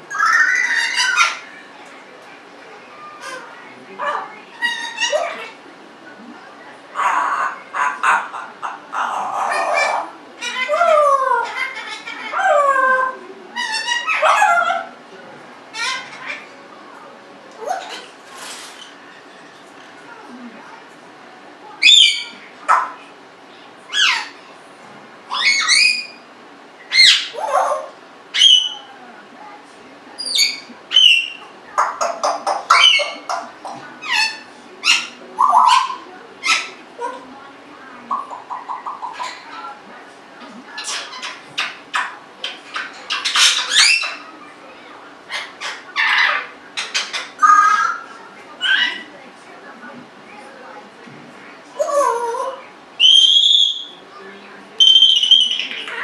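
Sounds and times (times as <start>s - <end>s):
parrot whistles and squawks: 0.1s - 1.7s, 7.0s - 14.9s, 21.8s - 23.0s, 23.9s - 24.4s, 25.3s - 26.2s, 26.9s - 28.9s, 30.2s - 37.3s, 40.8s - 44.3s, 45.3s - 49.1s, 51.8s - 54.0s, 54.8s - 56.0s.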